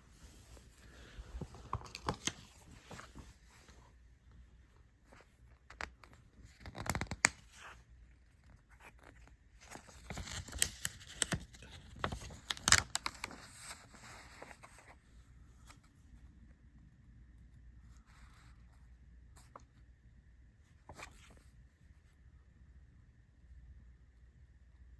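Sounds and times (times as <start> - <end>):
packaging being torn open: 12.0 - 13.2.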